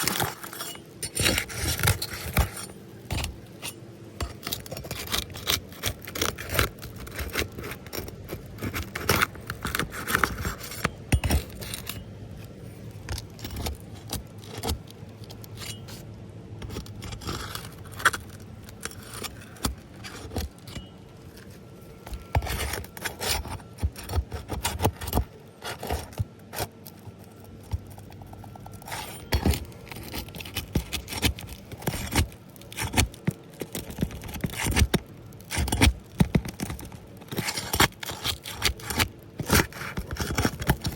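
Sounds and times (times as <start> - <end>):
hand tools scraping on shingles: 0.0 - 16.0, 16.6 - 26.8.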